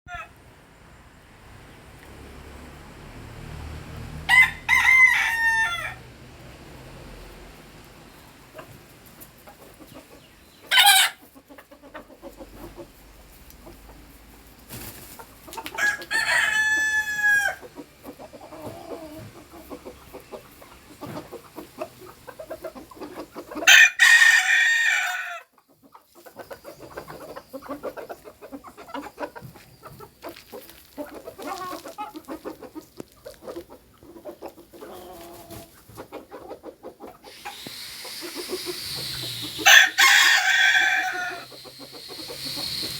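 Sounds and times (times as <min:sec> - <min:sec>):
rooster crowing: 0:00.1 - 0:00.4, 0:04.2 - 0:06.1, 0:15.8 - 0:17.6, 0:23.7 - 0:25.5, 0:39.4 - 0:41.6
chickens clucking softly: 0:04.7 - 0:42.9
short loud chicken call: 0:38.2 - 0:41.6.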